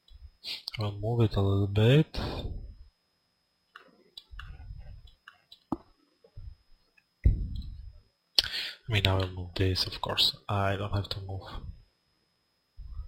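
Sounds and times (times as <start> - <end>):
low muffled bumps: 7.2 - 7.8.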